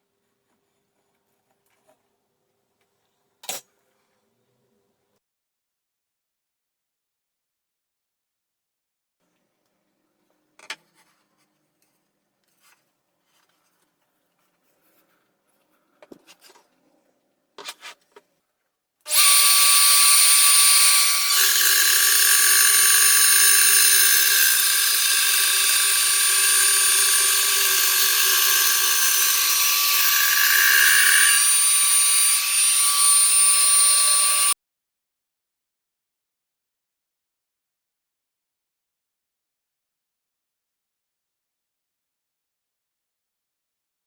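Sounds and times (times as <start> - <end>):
electric router whining: 19.1 - 34.6.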